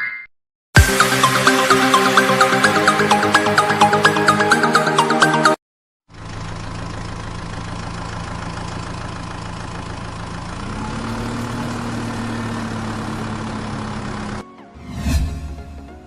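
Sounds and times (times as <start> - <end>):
tractor engine idling: 6.1 - 14.4.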